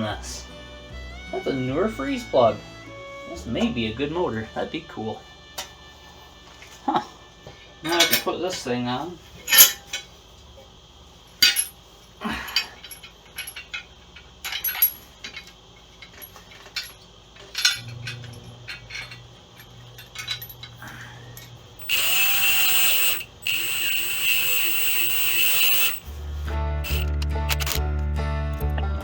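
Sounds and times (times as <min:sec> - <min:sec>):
metal parts clinking: 0:09.4 - 0:10.1, 0:11.4 - 0:11.8, 0:12.5 - 0:26.1, 0:26.8 - 0:27.8
sharp metal clanks: 0:09.4 - 0:10.1, 0:11.4 - 0:11.8, 0:14.4 - 0:20.8
cordless power tool running: 0:21.8 - 0:26.1, 0:26.8 - 0:27.8.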